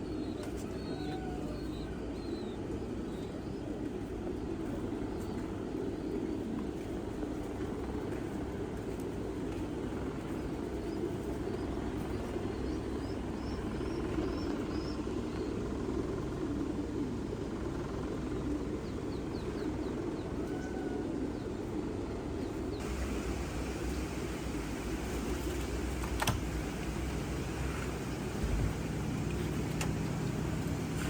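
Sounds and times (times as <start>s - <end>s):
faint high bird chirps: 0.0s - 3.6s, 19.3s - 21.5s
low rumbling noise: 21.2s - 31.0s.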